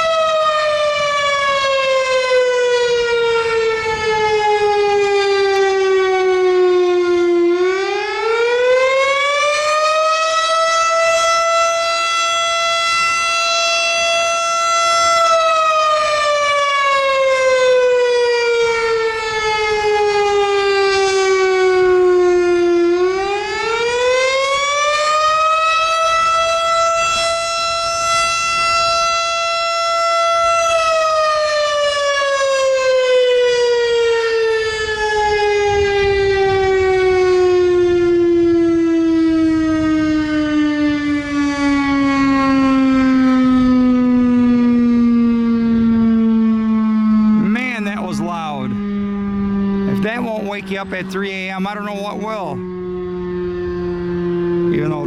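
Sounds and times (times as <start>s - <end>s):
fire siren wailing: 0.0s - 55.0s.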